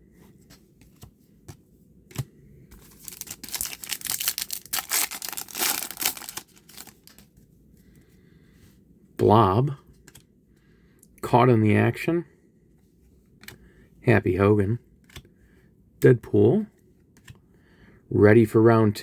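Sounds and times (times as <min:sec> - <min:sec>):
wrapper tearing and crinkling: 0:02.9 - 0:07.2.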